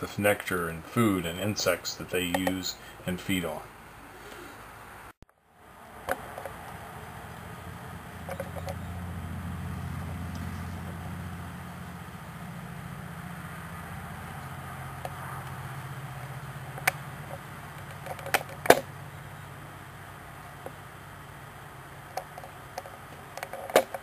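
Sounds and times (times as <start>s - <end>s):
low steady hum: 0.0s - 24.0s
sharp clicks: 2.3s - 2.6s.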